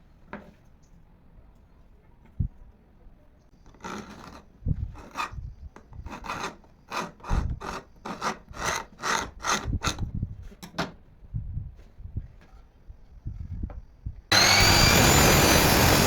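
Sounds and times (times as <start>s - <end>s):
hand tool scraping wood: 3.7s - 10.0s.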